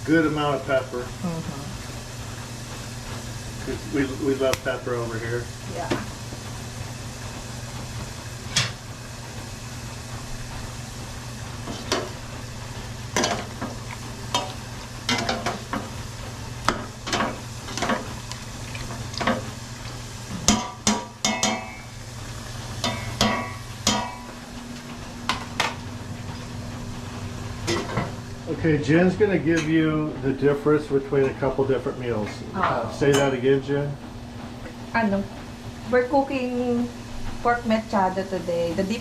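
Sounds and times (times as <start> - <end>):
food sizzling: 0.0 - 39.0
steady low hum: 0.0 - 39.0.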